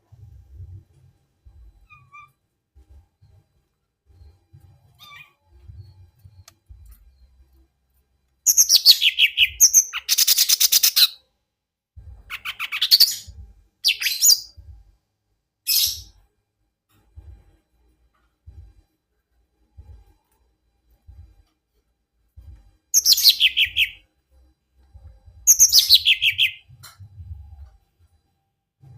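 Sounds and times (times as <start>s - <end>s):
faint low thuds: 0.0s - 2.1s, 5.6s - 7.4s, 12.0s - 12.4s, 13.3s - 13.8s, 14.5s - 15.0s, 17.0s - 19.0s, 19.6s - 20.2s, 22.2s - 22.9s, 24.8s - 25.5s, 26.7s - 28.2s.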